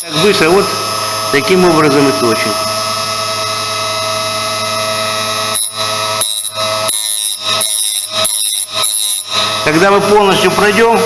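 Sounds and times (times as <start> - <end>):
sharpening machine whining: 0.0 - 11.0.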